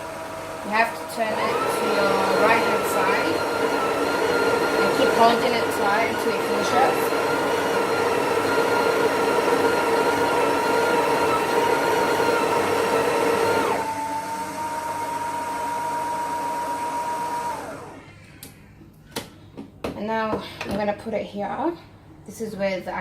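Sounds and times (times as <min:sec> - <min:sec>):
coffee grinder running: 0:00.0 - 0:18.1.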